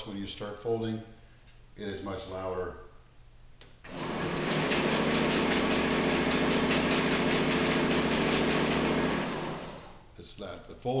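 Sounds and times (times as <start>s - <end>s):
paper folding machine running: 3.9s - 10.0s.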